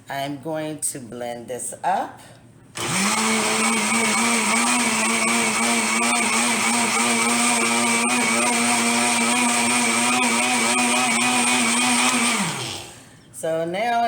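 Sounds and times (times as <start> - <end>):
electric blender running: 2.8 - 13.0.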